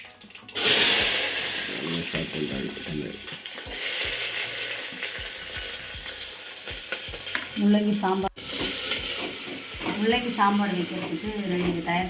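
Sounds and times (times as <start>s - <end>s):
food sizzling in a pan: 0.0s - 12.0s
person speaking: 1.7s - 3.3s
spoon knocking while stirring: 8.5s - 12.0s.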